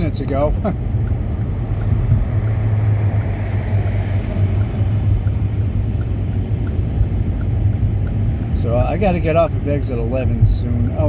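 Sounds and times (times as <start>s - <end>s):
road and engine rumble: 0.0s - 11.0s
faint small ticks: 1.0s - 8.6s.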